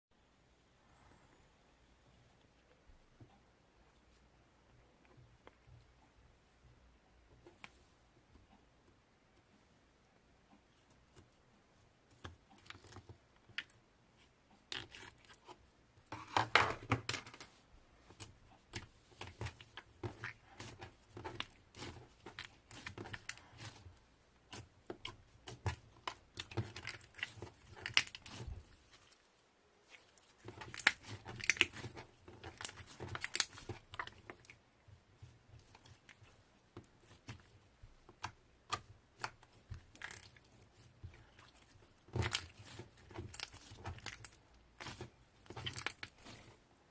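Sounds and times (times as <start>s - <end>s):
slime popping and crackling: 24.5s - 28.7s, 30.2s - 34.5s, 42.0s - 46.4s.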